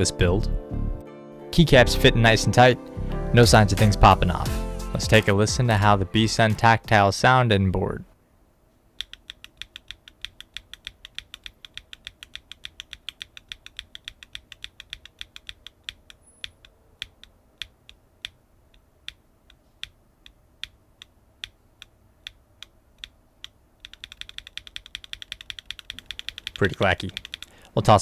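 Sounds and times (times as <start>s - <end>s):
mechanical keyboard typing: 9.0s - 18.4s, 19.8s - 27.6s.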